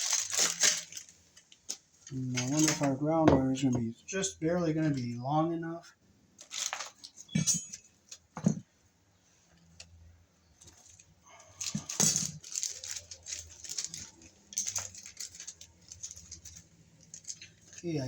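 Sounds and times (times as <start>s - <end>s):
screws rattling: 11.6s - 18.0s.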